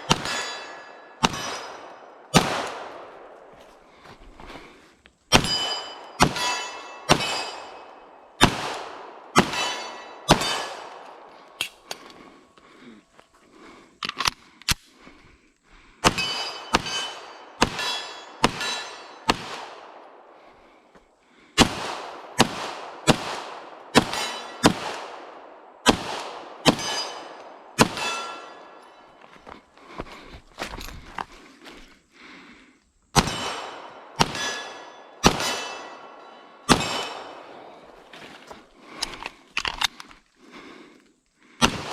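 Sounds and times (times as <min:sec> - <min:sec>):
bullet striking steel target: 0:00.0 - 0:02.6, 0:05.3 - 0:10.9, 0:16.0 - 0:19.6, 0:25.9 - 0:28.8, 0:33.2 - 0:37.5
pistol shots: 0:00.0 - 0:03.4, 0:05.3 - 0:11.4, 0:16.0 - 0:20.5, 0:21.6 - 0:28.6, 0:33.2 - 0:37.9, 0:41.6 - 0:41.9.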